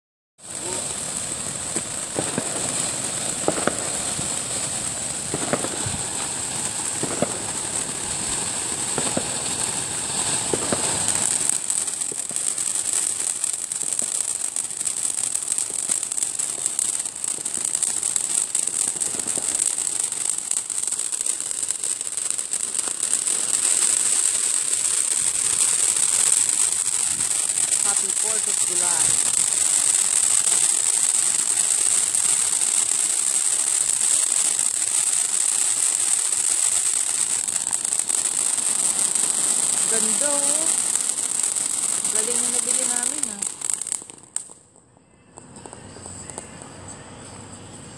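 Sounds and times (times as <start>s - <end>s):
fireworks hissing and crackling: 0.4s - 47.9s.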